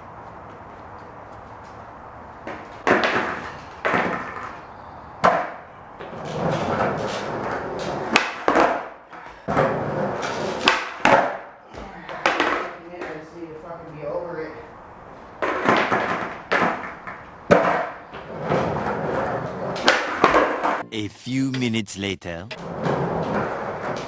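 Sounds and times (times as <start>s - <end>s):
skateboard wheels rolling: 5.2s - 8.8s.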